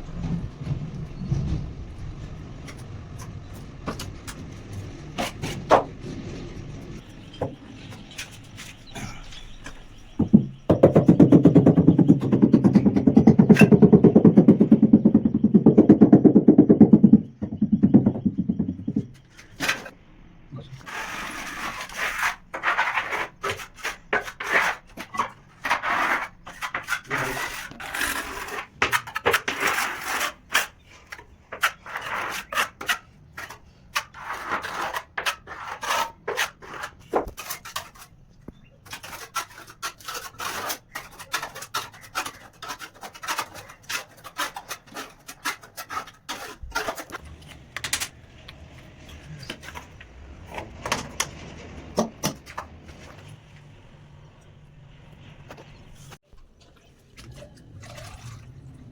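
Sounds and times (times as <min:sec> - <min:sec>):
trowel scraping mortar: 0:02.7 - 0:06.0, 0:07.0 - 0:20.0, 0:20.6 - 0:47.9, 0:48.7 - 0:53.7
sharp clicks and knocks: 0:47.0 - 0:48.7.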